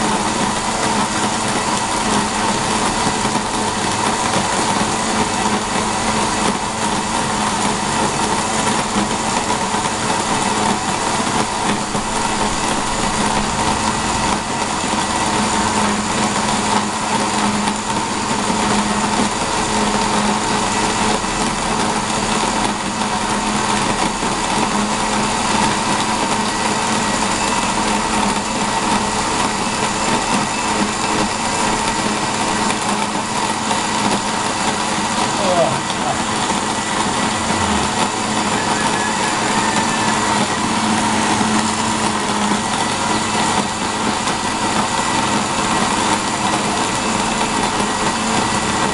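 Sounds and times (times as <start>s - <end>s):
small motor humming and whining: 0.0s - 48.9s.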